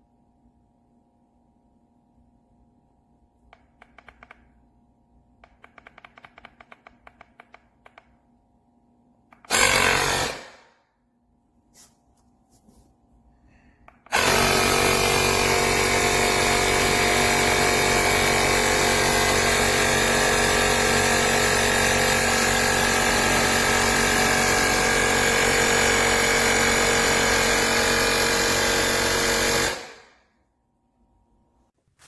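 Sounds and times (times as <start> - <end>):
electric air compressor running: 9.5 - 10.7, 14.1 - 30.1.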